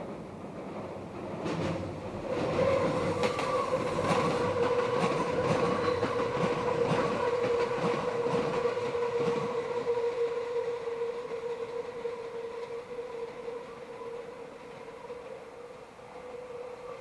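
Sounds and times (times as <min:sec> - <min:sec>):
rumble of train wheels: 0:00.0 - 0:17.0
clack of rail joints: 0:00.8 - 0:09.5
train wheels squealing on rails: 0:01.5 - 0:17.0.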